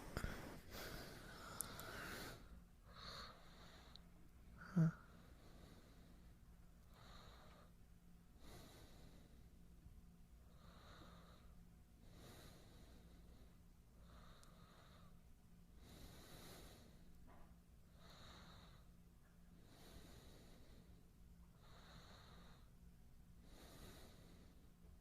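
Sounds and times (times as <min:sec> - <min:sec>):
man breathing slowly: 0:00.0 - 0:09.6, 0:10.4 - 0:24.9
faint steady hum: 0:00.0 - 0:25.0.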